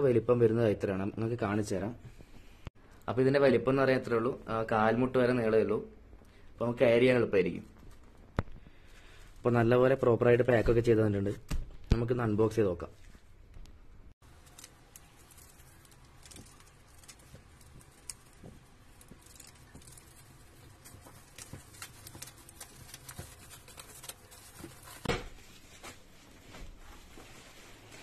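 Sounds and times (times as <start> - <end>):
packaging scratching and rustling: 14.2 - 28.0.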